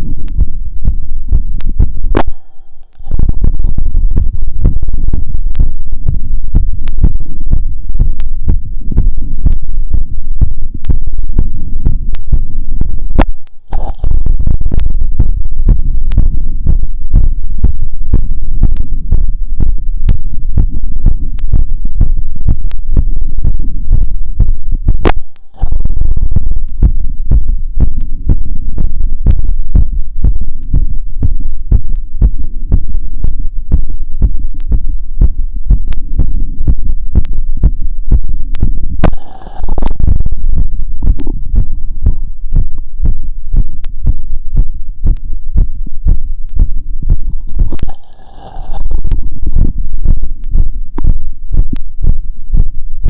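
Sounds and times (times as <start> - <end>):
heartbeat through stethoscope: 0.0 - 53.0
stethoscope scraping: 13.7 - 14.2, 47.5 - 48.8.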